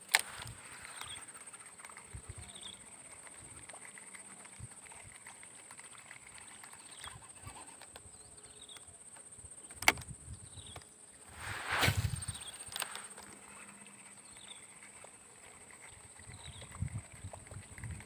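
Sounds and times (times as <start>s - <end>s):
short chirping calls: 10.6s - 13.2s.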